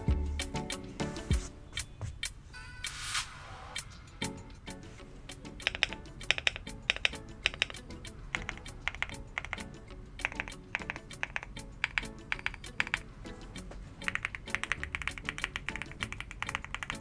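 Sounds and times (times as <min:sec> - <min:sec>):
background music: 0:00.0 - 0:17.0
mechanical keyboard typing: 0:05.6 - 0:13.1, 0:14.0 - 0:17.0.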